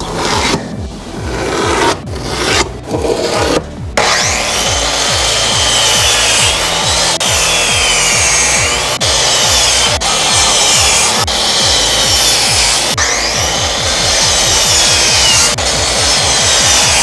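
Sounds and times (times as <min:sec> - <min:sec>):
rasp on wood: 0:00.0 - 0:17.0.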